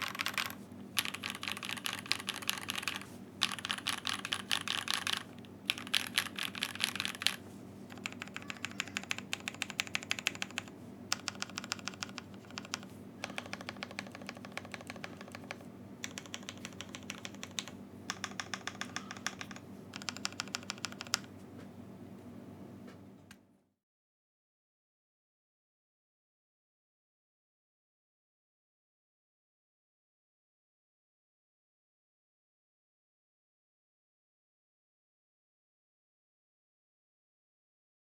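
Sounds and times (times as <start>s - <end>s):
mechanical keyboard typing: 0.0s - 21.3s.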